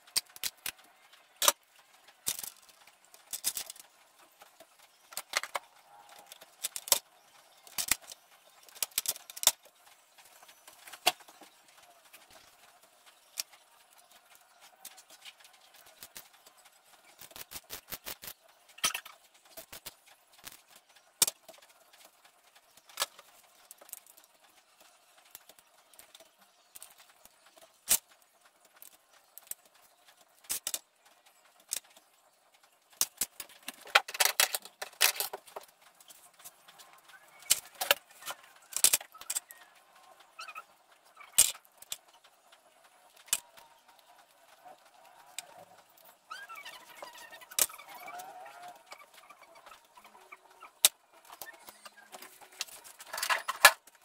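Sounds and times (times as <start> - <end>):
metal parts and tools clinking: 2.2 - 3.9, 50.8 - 53.9.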